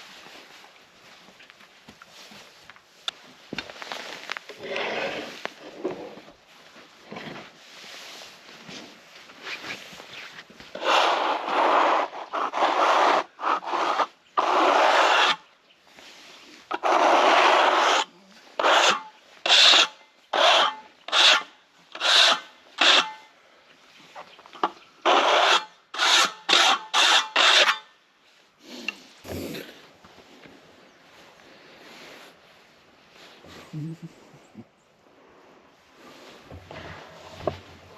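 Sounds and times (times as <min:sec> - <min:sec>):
rubbing strokes on rough wood: 0:03.8 - 0:23.2, 0:24.0 - 0:27.8, 0:28.6 - 0:30.2.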